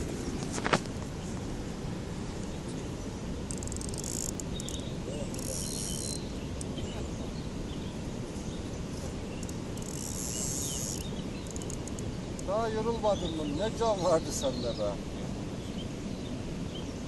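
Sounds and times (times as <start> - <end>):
crickets trilling: 2.3 - 8.1, 8.7 - 14.6.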